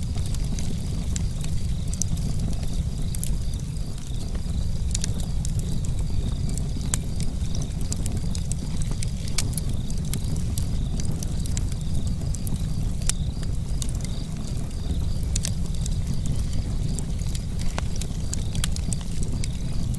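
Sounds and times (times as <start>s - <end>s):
sharp crackles and clicks: 0.0s - 19.9s.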